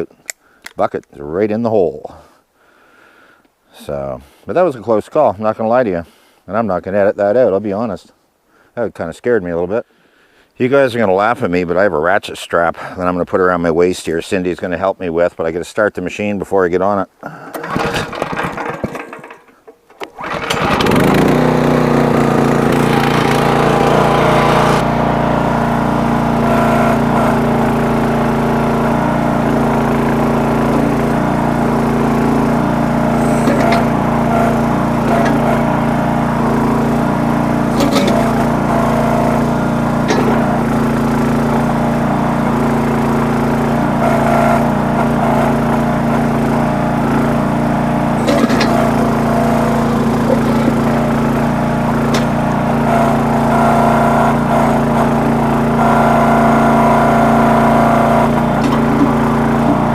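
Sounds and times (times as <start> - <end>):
small gasoline engine starting and running: 17.5 - 59.9.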